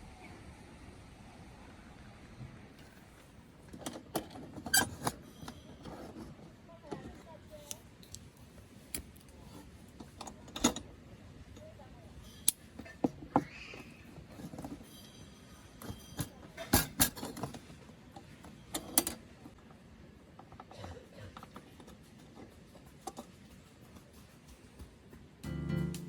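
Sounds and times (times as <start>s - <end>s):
light metallic clinks: 14.4s - 17.4s.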